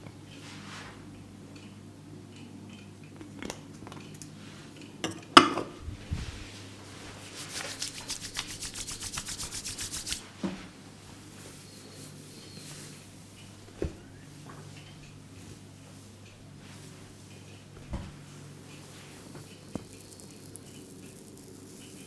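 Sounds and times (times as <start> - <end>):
fast taps of hands on head: 7.4 - 10.2.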